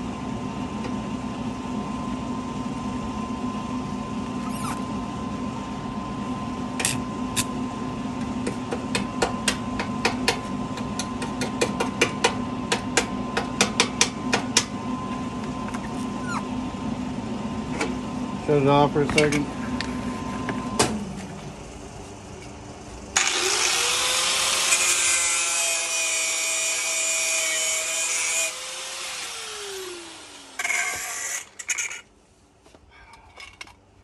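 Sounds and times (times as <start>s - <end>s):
welding machine humming: 23.2s - 32.0s.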